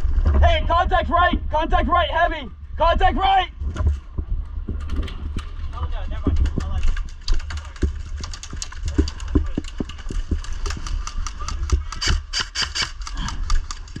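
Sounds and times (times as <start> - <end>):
steady low rumble: 0.0 - 14.0
airsoft guns firing: 8.2 - 14.0.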